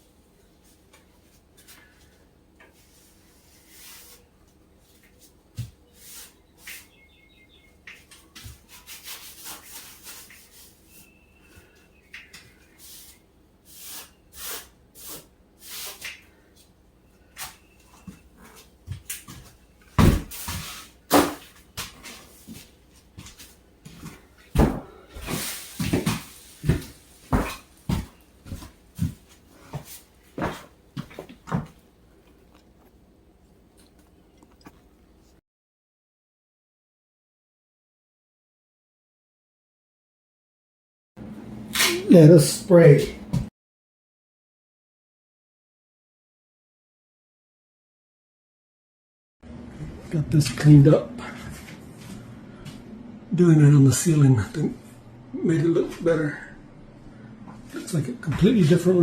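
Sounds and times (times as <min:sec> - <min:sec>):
rubbing rustling and knocking: 0:17.4 - 0:31.8.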